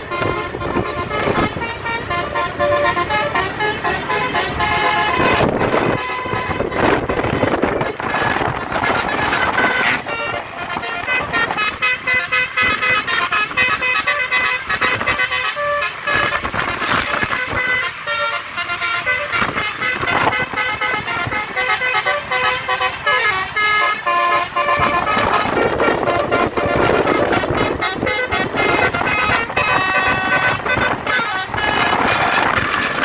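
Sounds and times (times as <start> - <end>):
bus air horn melody: 0.0 - 33.0
rushing noise: 0.0 - 33.0.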